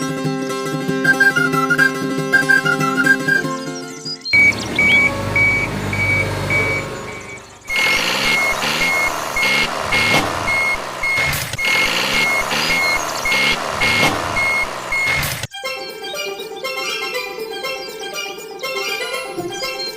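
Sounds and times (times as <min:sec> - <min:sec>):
reversing alarm beeping: 0:01.1 - 0:03.4, 0:04.4 - 0:15.5
heavy engine noise: 0:04.4 - 0:15.5.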